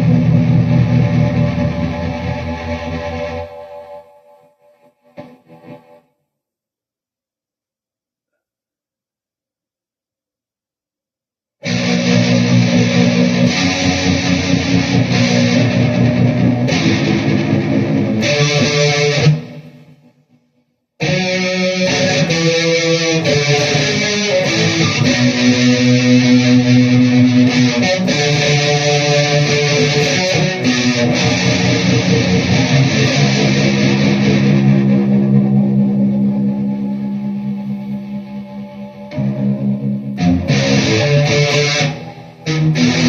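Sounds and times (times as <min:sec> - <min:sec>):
electric guitar chords: 0:00.0 - 0:06.0, 0:11.6 - 0:20.0, 0:21.0 - 0:43.0.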